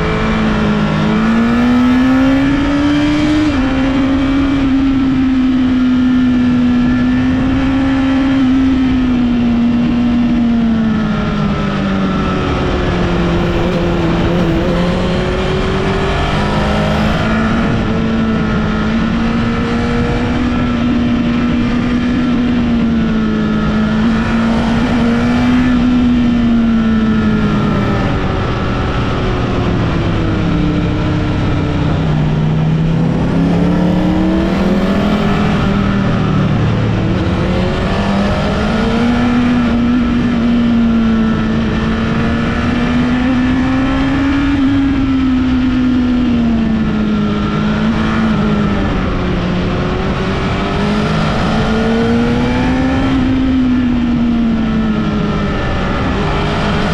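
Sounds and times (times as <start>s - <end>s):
motorcycle engine revving: 0.0s - 56.9s
wind rush: 8.9s - 56.9s.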